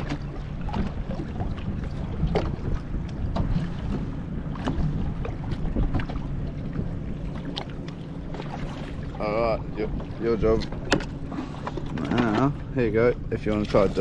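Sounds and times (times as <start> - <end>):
wind on microphone: 0.0 - 13.1
boat motor humming: 0.0 - 14.0
knocks against boat: 2.2 - 9.0, 9.9 - 12.5.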